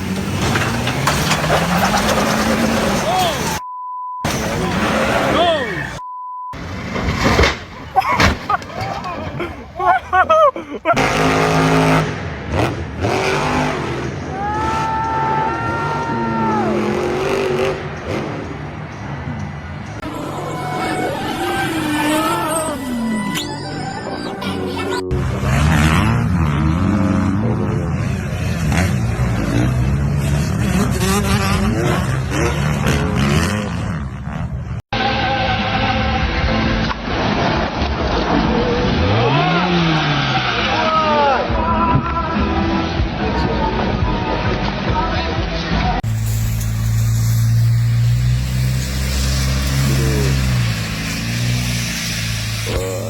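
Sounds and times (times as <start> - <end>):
off-road engine revving: 0.0 - 3.6, 4.2 - 6.0, 10.9 - 44.0, 45.9 - 53.0
engine running at steady pitch: 46.0 - 53.0.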